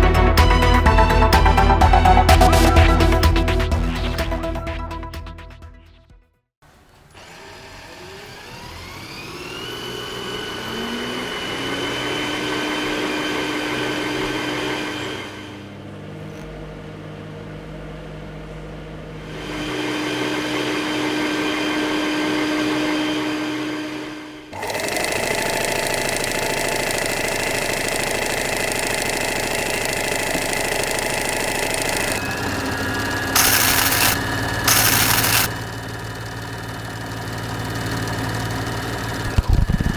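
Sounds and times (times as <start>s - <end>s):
small motor whirring: 7.1s - 14.5s, 24.6s - 39.9s.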